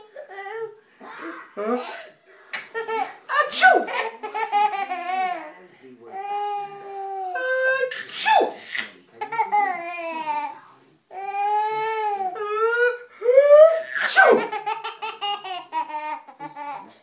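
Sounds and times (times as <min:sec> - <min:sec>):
baby giggling: 0:02.6 - 0:05.5, 0:08.8 - 0:10.6, 0:14.0 - 0:17.0
person sneezing: 0:03.5 - 0:03.9, 0:07.9 - 0:08.9, 0:13.9 - 0:14.5.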